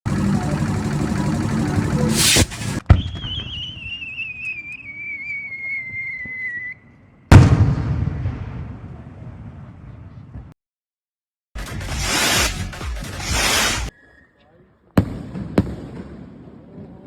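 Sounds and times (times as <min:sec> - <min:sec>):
firework bang: 0:02.1 - 0:04.0, 0:07.3 - 0:08.8, 0:15.0 - 0:16.3
firework explosion with rumble: 0:02.1 - 0:04.3, 0:07.3 - 0:10.4, 0:15.0 - 0:16.9
firework crackling: 0:02.1 - 0:04.8, 0:11.9 - 0:13.9
whistling firework: 0:02.1 - 0:07.4, 0:13.2 - 0:14.4.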